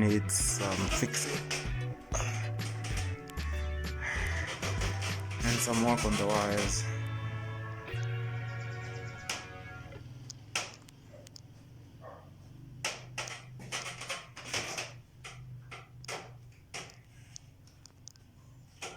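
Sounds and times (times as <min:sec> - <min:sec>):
light clicks and knocks: 0:12.8 - 0:18.9.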